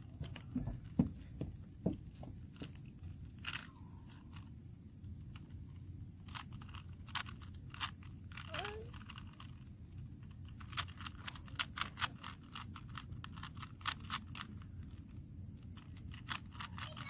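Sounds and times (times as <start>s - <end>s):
puzzle cube clicking: 6.2s - 9.6s, 10.2s - 17.0s.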